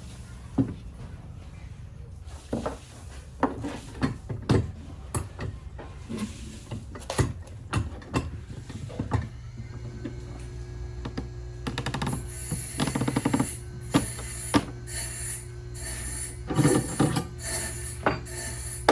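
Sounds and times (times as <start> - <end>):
steady low hum: 9.4 - 18.9.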